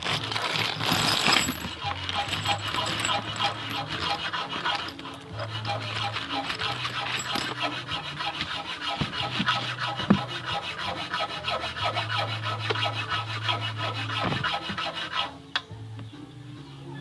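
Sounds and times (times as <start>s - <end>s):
hand tool scraping metal: 0.0s - 15.4s.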